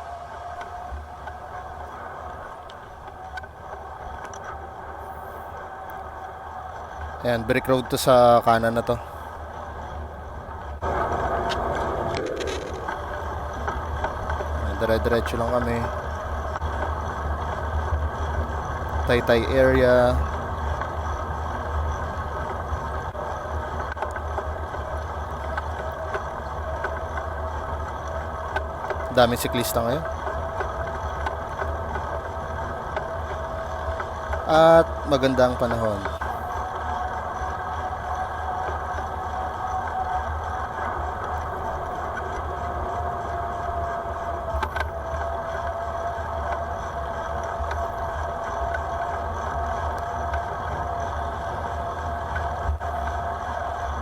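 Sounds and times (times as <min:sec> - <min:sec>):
road noise: 0:00.0 - 0:54.0
thin steady whine: 0:00.0 - 0:54.0
wind rumble on microphone: 0:00.0 - 0:54.0
faint ticks: 0:00.3 - 0:54.0.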